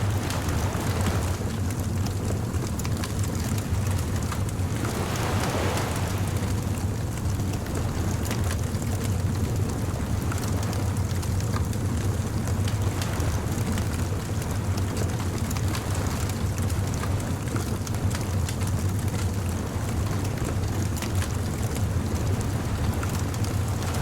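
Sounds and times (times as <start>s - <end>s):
steady low rumble: 0.0s - 24.0s.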